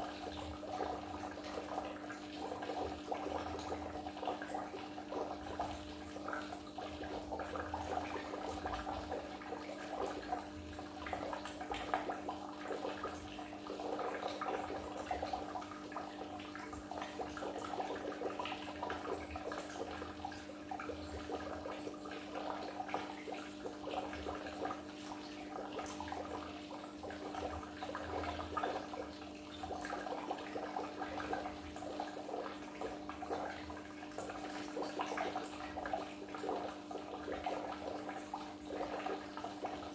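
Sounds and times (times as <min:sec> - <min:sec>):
aquarium water bubbling: 0:00.0 - 0:39.9.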